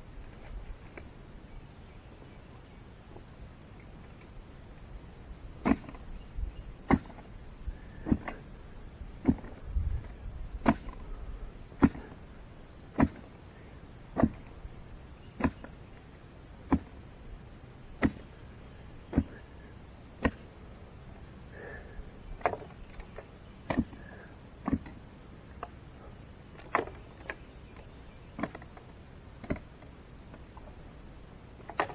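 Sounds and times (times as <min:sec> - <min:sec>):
digging tool chopping into ground: 0:05.6 - 0:06.0, 0:06.8 - 0:07.3, 0:08.0 - 0:08.4, 0:09.2 - 0:09.6, 0:10.6 - 0:11.0, 0:11.8 - 0:12.2, 0:12.9 - 0:13.3, 0:14.2 - 0:14.5, 0:15.4 - 0:15.7, 0:16.6 - 0:17.0, 0:18.0 - 0:18.3, 0:20.2 - 0:20.5, 0:23.6 - 0:24.0, 0:24.6 - 0:24.9.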